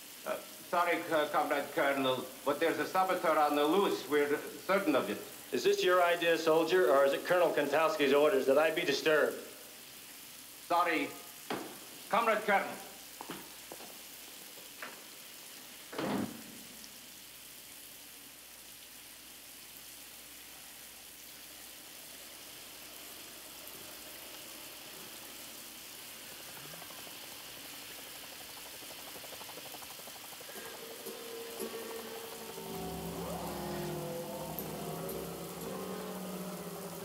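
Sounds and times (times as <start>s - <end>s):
thump: 11.5s - 11.8s, 15.9s - 16.5s
shower water spraying: 18.4s - 37.0s.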